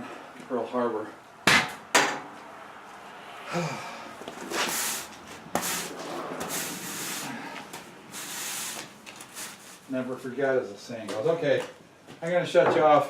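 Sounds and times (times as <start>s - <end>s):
sand swept across concrete floor: 4.5s - 10.1s.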